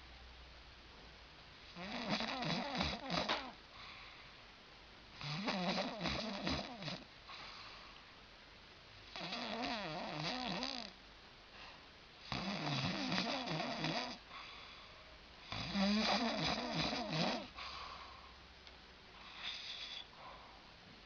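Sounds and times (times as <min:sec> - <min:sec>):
person snoring: 0:01.8 - 0:03.6, 0:05.2 - 0:07.0, 0:09.2 - 0:11.0, 0:12.3 - 0:14.2, 0:15.5 - 0:17.6.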